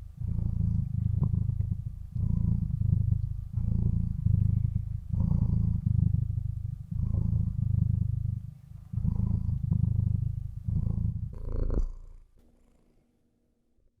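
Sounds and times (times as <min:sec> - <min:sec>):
cat purring: 0:00.0 - 0:13.0.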